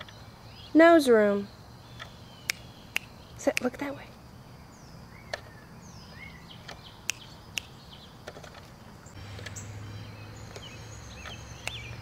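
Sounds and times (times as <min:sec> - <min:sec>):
birds chirping: 0:00.0 - 0:12.0
sharp clicks: 0:02.0 - 0:04.0, 0:05.3 - 0:05.5, 0:06.6 - 0:08.7, 0:10.5 - 0:12.0.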